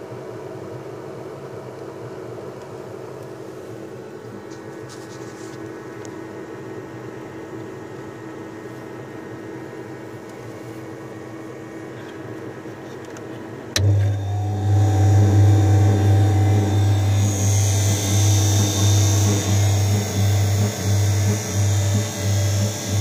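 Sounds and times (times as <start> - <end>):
faint electric hum: 0.0 - 23.0
device running with low hum: 13.8 - 23.0.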